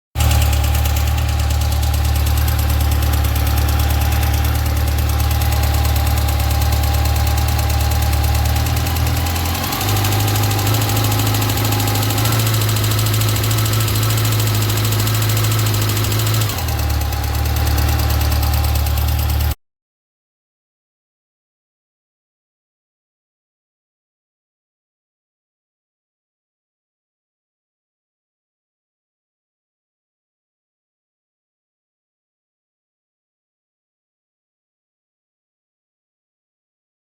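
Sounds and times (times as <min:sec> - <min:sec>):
motorcycle engine idling: 0:00.2 - 0:19.6.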